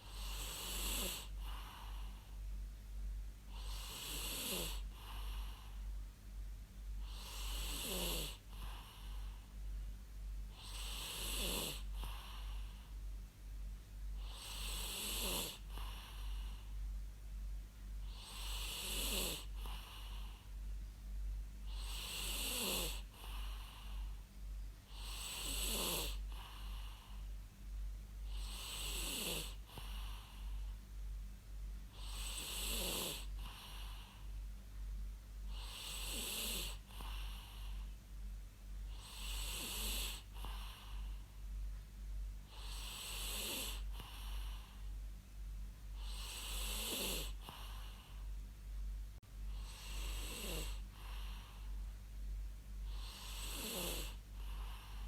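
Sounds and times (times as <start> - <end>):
person snoring: 0.0 - 2.2, 3.5 - 5.7, 7.0 - 9.2, 10.6 - 12.7, 14.2 - 16.6, 18.1 - 20.4, 21.7 - 24.1, 24.9 - 27.2, 28.3 - 30.6, 32.0 - 34.2, 35.5 - 37.8, 38.9 - 41.1, 42.5 - 44.8, 46.0 - 48.2, 49.5 - 51.6, 52.9 - 55.0.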